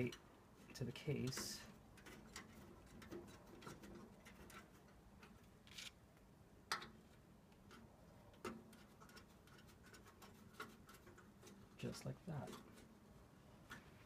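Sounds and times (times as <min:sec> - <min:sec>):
metal plate clicks and taps: 0:06.7 - 0:11.6.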